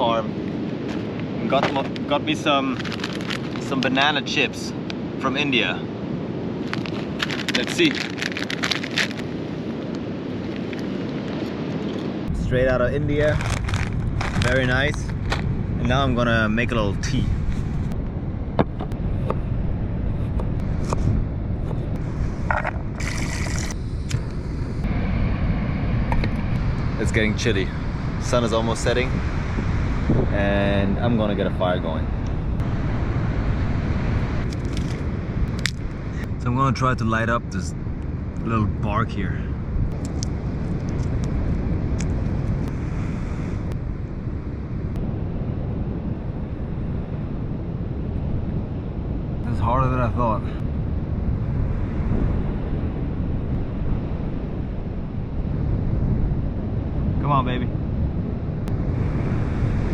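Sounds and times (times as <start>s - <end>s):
sea surf: 0.0s - 17.8s, 38.2s - 50.6s, 51.2s - 59.9s
steady low rumble: 0.0s - 59.9s
wind buffeting microphone: 0.0s - 59.9s
camp cooking gear clicks and scrapes: 2.7s - 3.8s, 6.7s - 9.2s, 13.3s - 15.4s, 22.5s - 23.8s.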